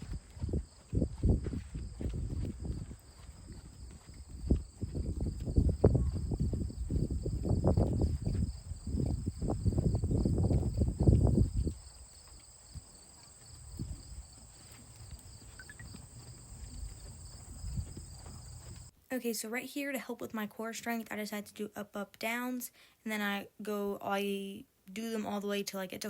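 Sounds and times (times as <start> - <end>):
horse hoofbeats: 0.0 - 18.9
insects chirring: 1.8 - 18.9.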